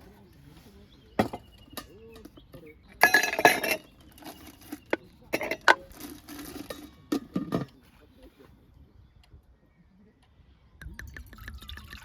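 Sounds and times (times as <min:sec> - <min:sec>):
dishes and cutlery clinking: 0:01.2 - 0:07.8
dishes clattering: 0:01.2 - 0:07.8.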